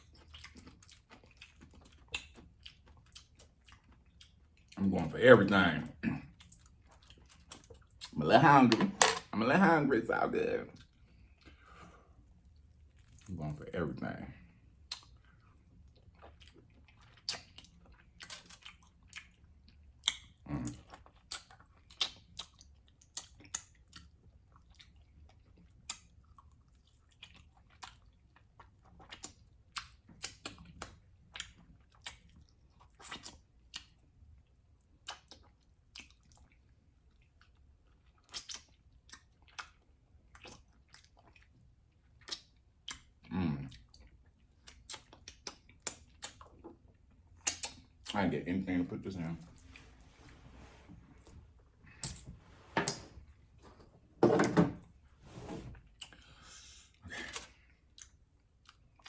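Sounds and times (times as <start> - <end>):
person chewing food: 0.0 - 4.8, 6.2 - 8.2, 14.4 - 48.2, 49.4 - 54.2, 55.8 - 59.0.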